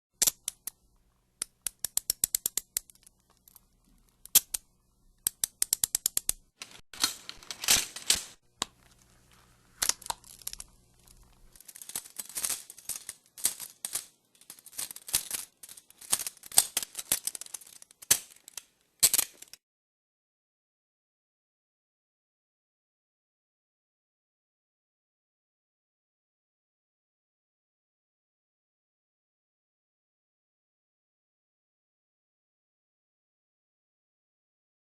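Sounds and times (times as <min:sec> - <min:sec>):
handcuff ratchet clicks: 0:00.2 - 0:00.8, 0:01.4 - 0:04.6, 0:05.2 - 0:06.4
handcuffs clattering: 0:01.4 - 0:04.6, 0:05.3 - 0:08.4, 0:09.8 - 0:19.6.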